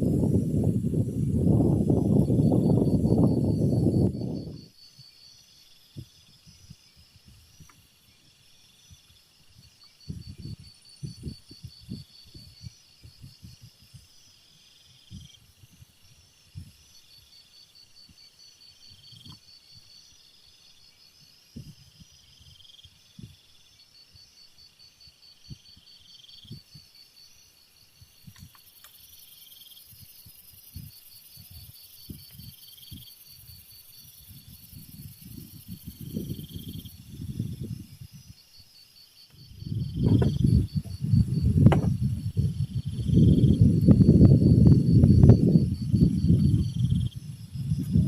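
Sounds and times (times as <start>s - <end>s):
insects trilling: 0.0s - 48.0s
soft low thumps: 39.7s - 42.6s.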